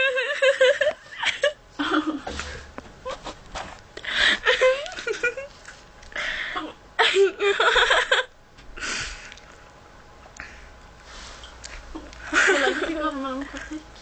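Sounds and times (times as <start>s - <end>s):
girl laughing: 0.0s - 3.3s, 4.2s - 5.5s, 6.6s - 8.3s, 11.9s - 13.9s.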